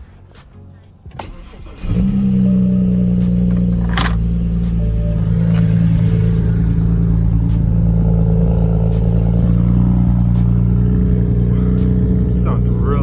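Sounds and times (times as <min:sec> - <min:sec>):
car engine idling: 0:01.2 - 0:13.0.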